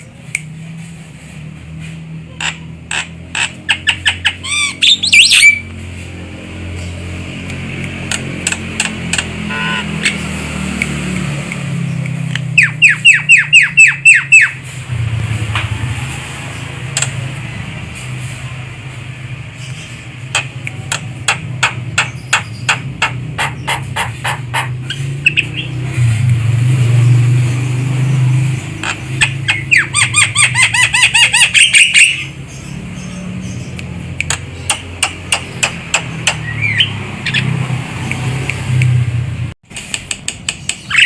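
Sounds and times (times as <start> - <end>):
myna calling: 8.2 - 10.3.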